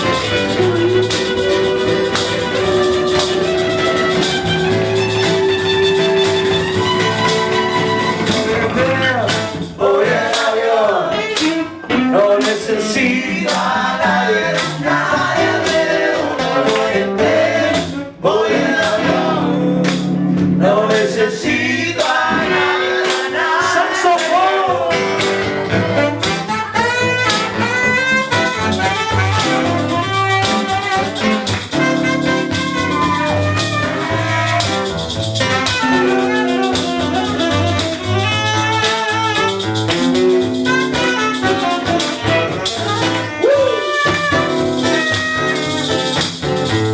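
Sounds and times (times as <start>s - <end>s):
person singing over a band: 8.5s - 25.4s.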